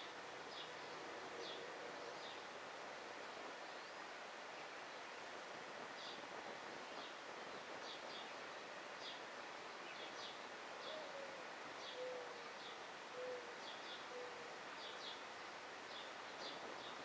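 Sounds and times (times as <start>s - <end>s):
steady outdoor hiss: 0.0s - 17.0s
dove cooing: 10.8s - 14.5s.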